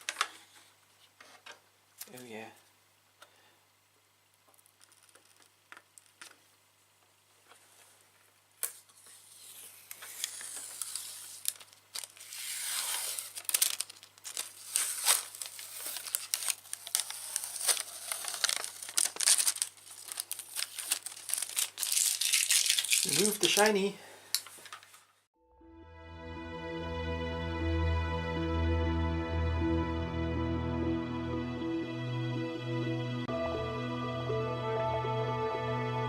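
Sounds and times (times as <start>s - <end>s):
thin plastic crinkling: 8.7s - 25.1s.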